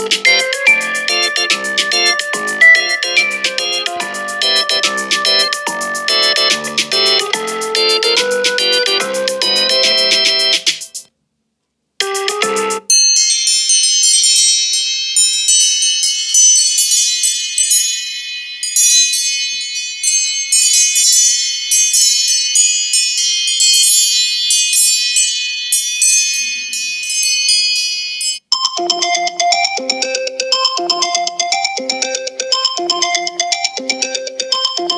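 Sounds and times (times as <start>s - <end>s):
bell-like chime ringtone: 0.0s - 10.7s, 12.0s - 34.9s
low-pitched repeating ringtone: 0.0s - 11.0s, 12.0s - 13.1s, 28.5s - 34.9s.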